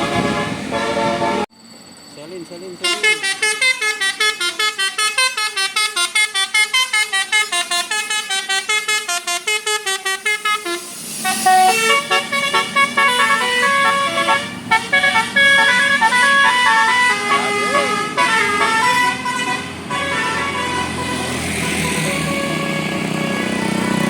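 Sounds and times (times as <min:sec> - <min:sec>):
musical air horn playing tune: 0:00.0 - 0:01.5, 0:02.8 - 0:24.0
air hiss: 0:10.2 - 0:12.9.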